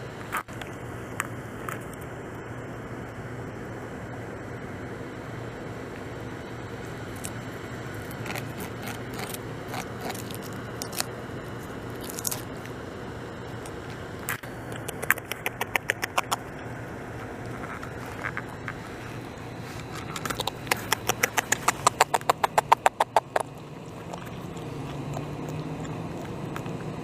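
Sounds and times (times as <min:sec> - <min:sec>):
beaver gnawing bark: 0:05.8 - 0:27.0.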